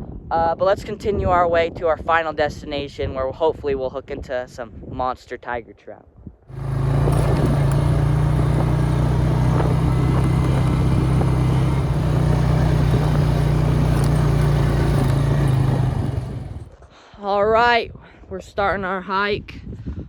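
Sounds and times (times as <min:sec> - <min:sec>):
engine hum: 0:06.5 - 0:16.7
road noise: 0:06.5 - 0:16.7.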